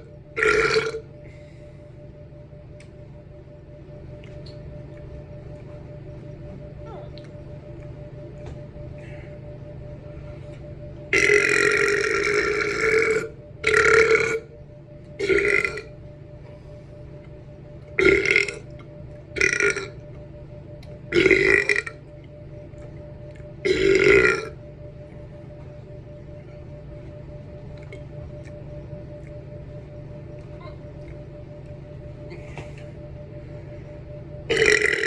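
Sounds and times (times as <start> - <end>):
person belching loudly: 0.4 - 1.0, 11.2 - 14.5, 15.2 - 15.9, 18.0 - 18.6, 23.7 - 24.5, 34.5 - 35.0.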